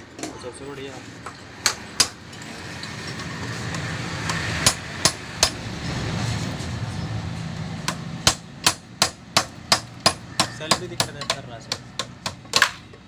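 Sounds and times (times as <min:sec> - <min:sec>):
hammer striking metal: 0:04.3 - 0:05.7, 0:07.8 - 0:12.8.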